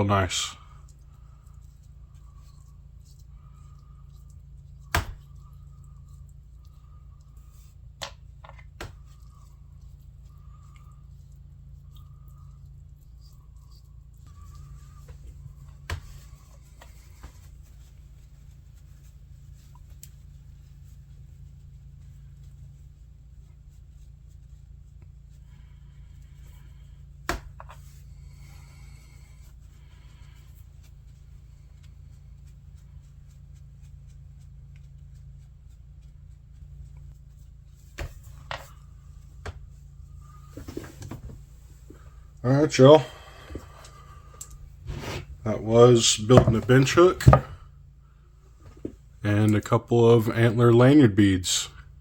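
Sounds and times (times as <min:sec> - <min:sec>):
low workshop hum: 0:00.0 - 0:52.0
handling objects on workbench: 0:46.3 - 0:47.6.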